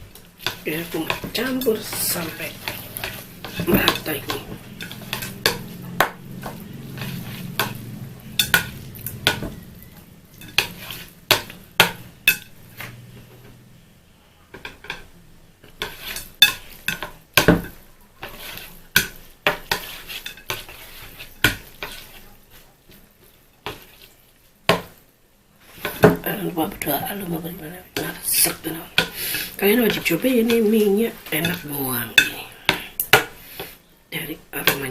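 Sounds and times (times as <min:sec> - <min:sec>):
utensil scraping a bowl: 0:00.2 - 0:13.0, 0:15.7 - 0:22.4.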